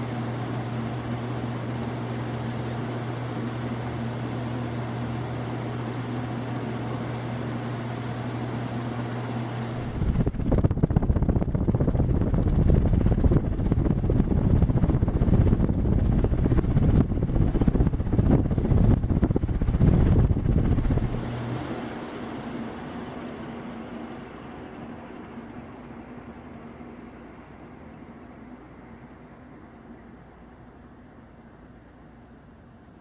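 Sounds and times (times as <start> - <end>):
fan blades whooshing: 0.0 - 32.5
ceiling fan motor hum: 0.0 - 33.0
airflow buffeting microphone: 9.6 - 32.1.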